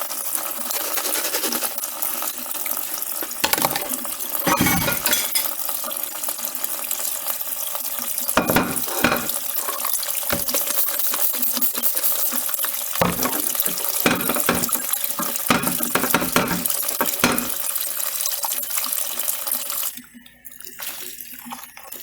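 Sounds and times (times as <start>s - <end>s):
tap water running: 0.0s - 22.0s
dishes clattering: 3.4s - 5.6s, 8.4s - 10.8s, 13.0s - 17.7s.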